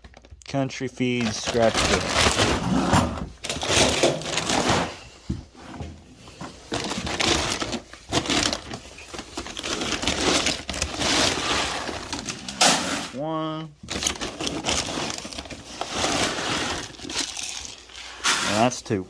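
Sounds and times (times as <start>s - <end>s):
grain pellets poured into bucket: 16.1s - 18.8s.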